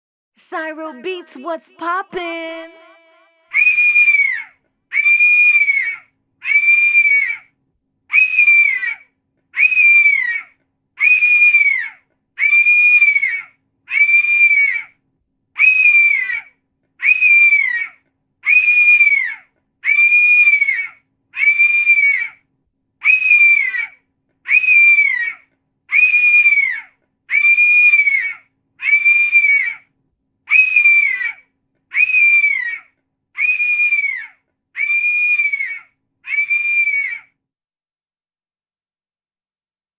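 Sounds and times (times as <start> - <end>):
bird screaming harsh calls: 3.5 - 7.5, 8.1 - 15.0, 15.6 - 22.4, 23.0 - 29.9, 30.5 - 37.4.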